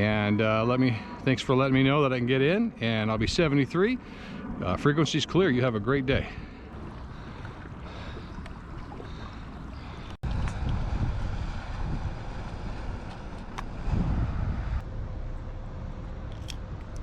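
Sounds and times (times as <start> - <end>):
wind buffeting microphone: 3.0 - 14.8
water lapping: 6.4 - 13.9.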